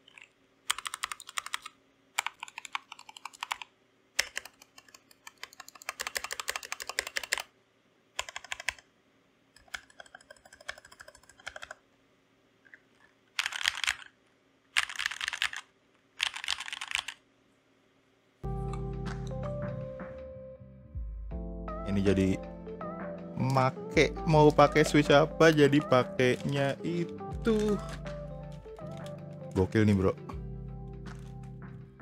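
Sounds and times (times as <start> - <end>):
mechanical keyboard typing: 0.0 - 7.5, 8.2 - 8.9, 9.6 - 11.8, 13.4 - 14.1, 14.7 - 17.2, 24.8 - 29.7.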